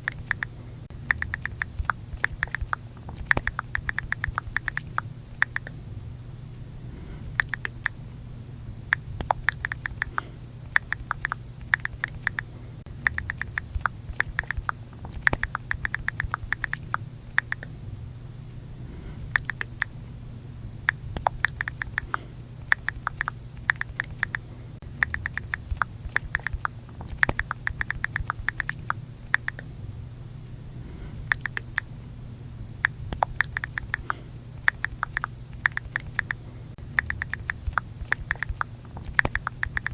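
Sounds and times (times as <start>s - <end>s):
keyboard clicks: 0.0s - 0.5s, 1.1s - 5.7s, 7.4s - 8.0s, 8.9s - 12.4s, 13.0s - 17.7s, 19.4s - 19.9s, 21.2s - 24.4s, 25.0s - 29.6s, 31.3s - 31.8s, 33.1s - 36.4s, 37.0s - 39.9s
faint low hum: 0.0s - 39.9s.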